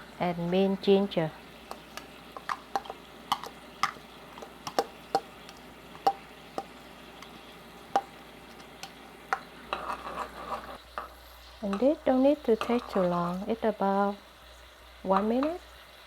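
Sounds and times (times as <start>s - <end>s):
faint steady background noise: 0.0s - 16.0s
spoon clinking against a pan: 1.7s - 7.4s, 8.0s - 9.5s.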